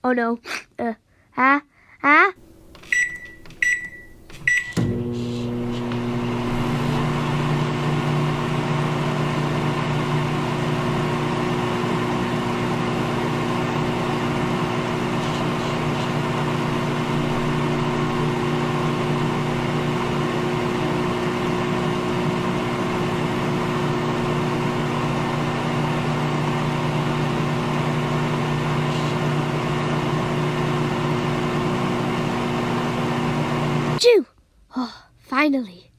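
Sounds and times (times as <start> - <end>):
microwave oven humming: 2.4 - 34.0
keypad beep: 2.8 - 4.8.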